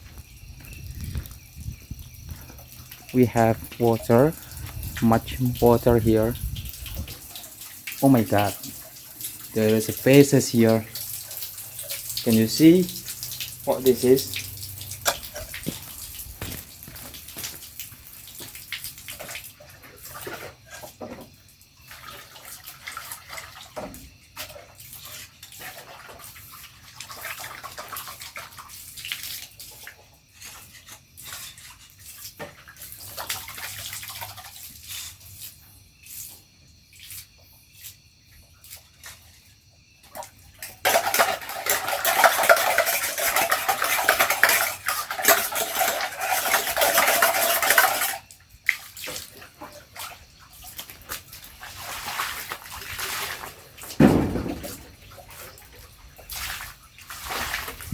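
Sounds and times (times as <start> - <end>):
water splashing: 0.0 - 20.6, 40.1 - 57.9
water pouring: 0.0 - 20.9, 40.1 - 57.9.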